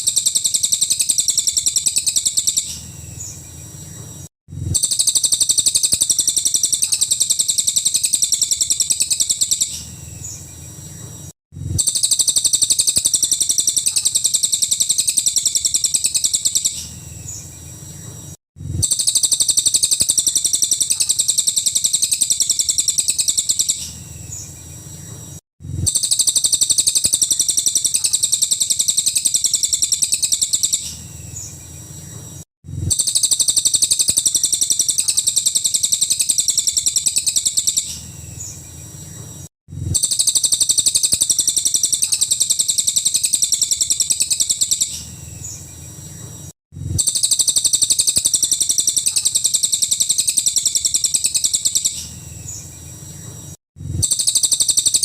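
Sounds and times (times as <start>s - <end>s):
bird's rattling trill: 4.7s - 10.0s, 11.8s - 17.0s, 18.8s - 24.0s, 25.8s - 31.1s, 32.9s - 38.2s, 39.9s - 45.2s, 47.0s - 52.2s, 54.0s - 55.0s.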